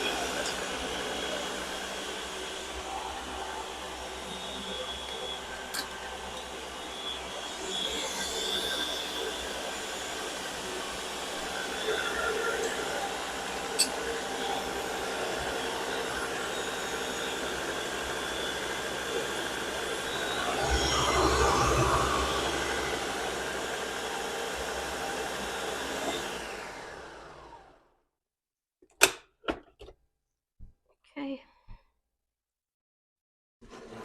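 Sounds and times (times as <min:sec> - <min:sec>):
electric blender running: 0:00.0 - 0:27.9.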